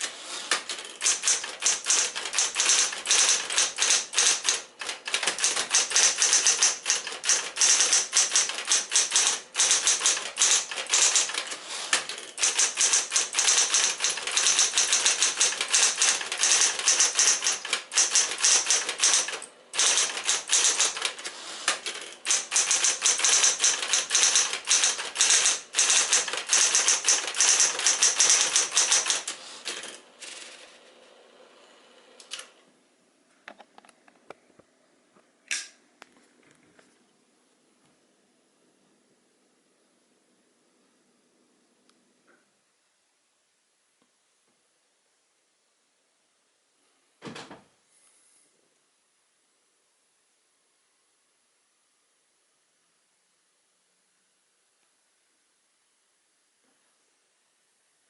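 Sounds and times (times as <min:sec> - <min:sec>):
electric typewriter typing: 0:00.0 - 0:30.8.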